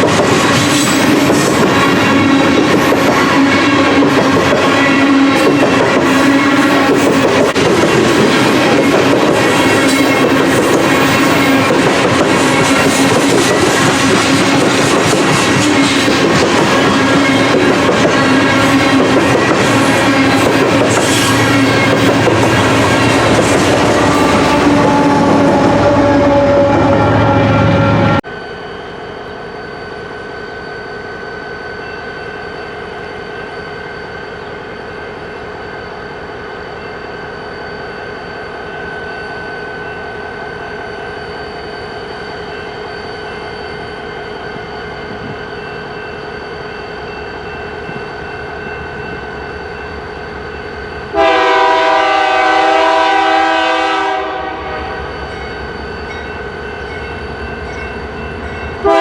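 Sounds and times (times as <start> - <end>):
freight train rumbling by: 0.0 - 59.0
locomotive air horn blast: 23.9 - 28.2, 51.1 - 55.1
constant ringing tone: 28.2 - 51.2, 55.0 - 58.9.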